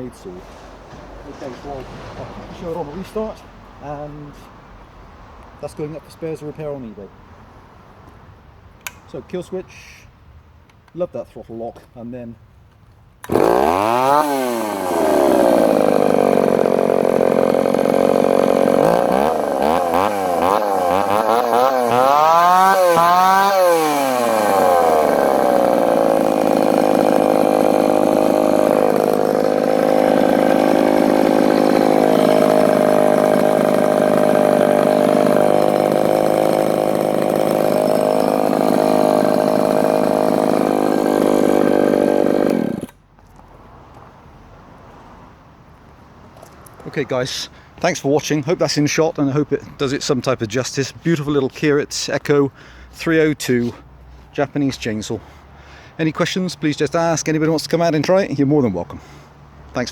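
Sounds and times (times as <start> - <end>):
chainsaw engine revving and idling: 13.2 - 43.0.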